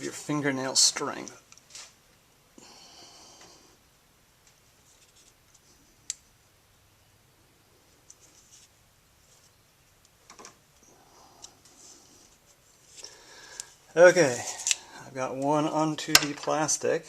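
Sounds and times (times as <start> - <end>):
faint plastic clicks: 9.4 - 13.8.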